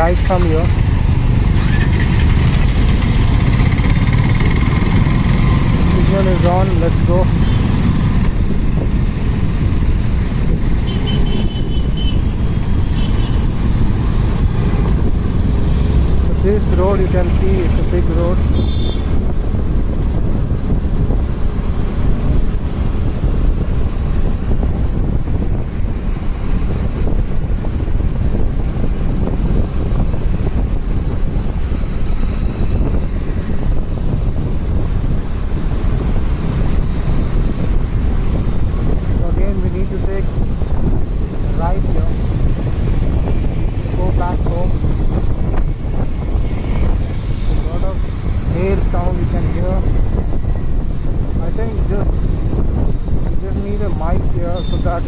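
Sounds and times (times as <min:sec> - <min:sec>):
motorcycle engine rumble: 0:00.0 - 0:55.0
wind buffeting: 0:00.0 - 0:55.0.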